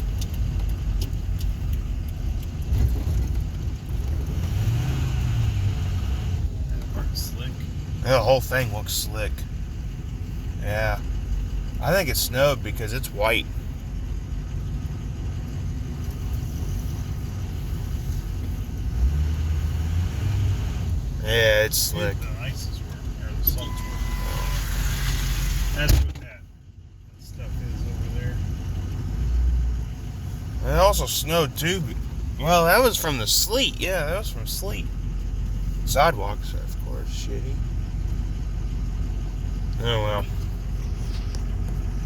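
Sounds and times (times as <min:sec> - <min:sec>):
faint clicks: 0:00.0 - 0:03.4
engine and road rumble: 0:00.0 - 0:42.0.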